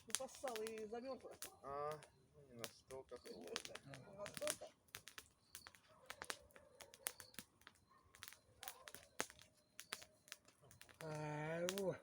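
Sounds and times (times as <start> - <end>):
campfire crackling and popping: 0.0 - 12.0.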